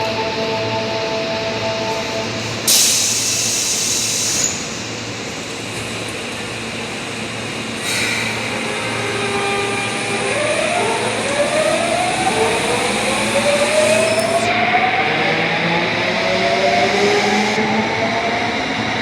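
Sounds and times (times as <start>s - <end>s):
traction motors whining: 0.3s - 18.8s
loud hiss of air: 2.4s - 6.0s, 7.1s - 14.5s.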